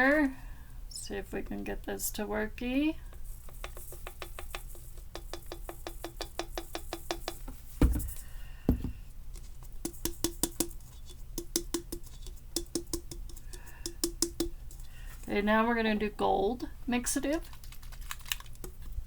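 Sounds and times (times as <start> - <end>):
heavier knocks: 7.8 - 9.0.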